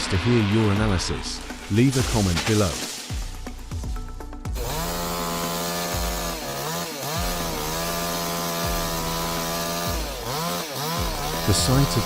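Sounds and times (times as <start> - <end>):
chainsaw running at high speed: 4.6 - 12.0.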